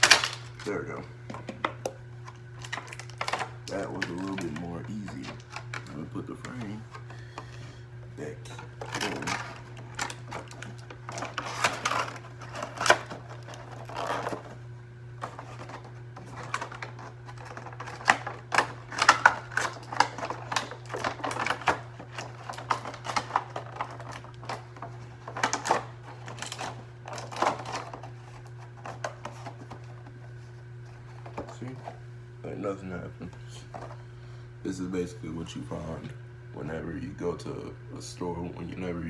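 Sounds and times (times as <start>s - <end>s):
plastic packaging clicks and crinkles: 0.0s - 0.7s, 2.2s - 6.8s, 8.8s - 14.6s, 15.2s - 29.8s.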